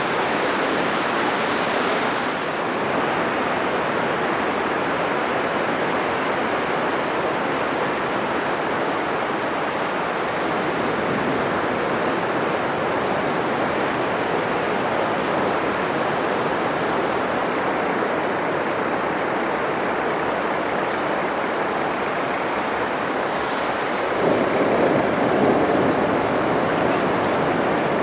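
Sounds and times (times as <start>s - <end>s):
ocean surf on beach: 0.0s - 28.0s.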